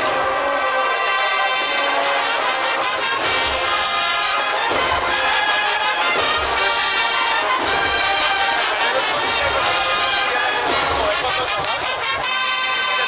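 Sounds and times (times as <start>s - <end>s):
brass marching band: 0.0s - 13.0s
drum beat: 3.1s - 12.2s.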